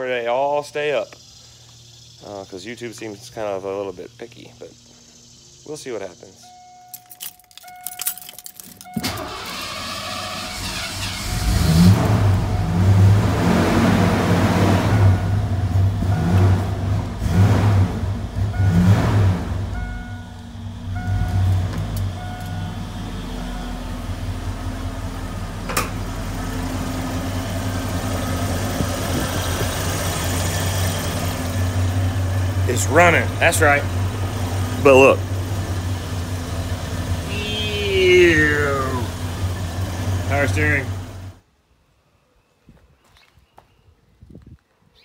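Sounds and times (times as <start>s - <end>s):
starter motor cranking: 7.0s - 12.0s
truck engine running and revving: 7.5s - 41.4s.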